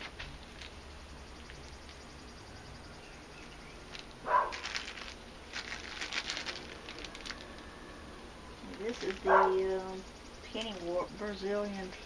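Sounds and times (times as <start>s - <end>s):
wet paper and plastic crinkling: 0.0s - 0.8s, 3.9s - 8.0s, 8.6s - 9.9s.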